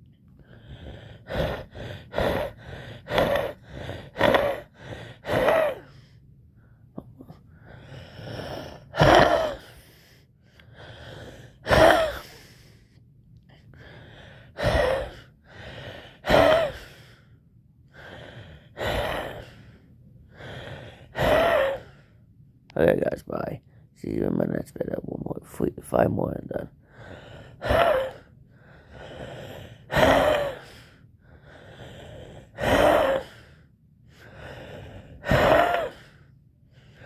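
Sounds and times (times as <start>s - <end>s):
person wheezing: 0.4s - 6.2s, 7.1s - 10.1s, 10.7s - 12.7s, 13.8s - 17.3s, 18.0s - 22.2s, 26.9s - 33.6s, 34.2s - 37.0s.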